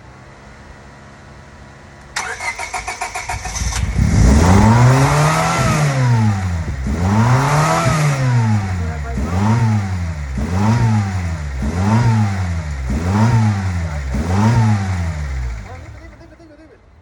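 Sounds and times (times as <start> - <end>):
car engine starter cranking: 2.0 - 5.0
car engine revving: 2.0 - 16.4.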